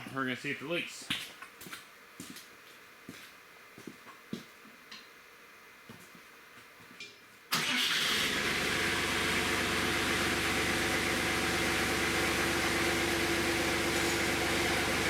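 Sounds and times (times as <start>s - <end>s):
backhoe engine starting and running: 7.5s - 15.0s.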